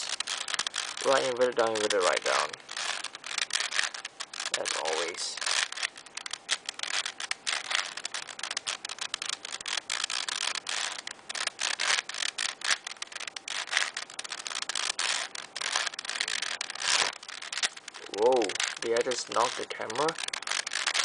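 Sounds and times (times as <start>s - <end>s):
puzzle cube clicking and scraping: 0.0s - 21.0s.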